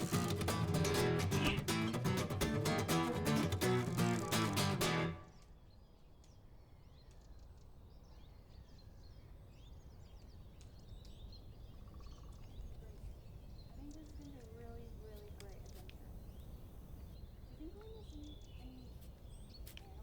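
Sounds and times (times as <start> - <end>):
bird trill: 0.0 - 5.4
bird chirps and twitters: 0.0 - 20.0.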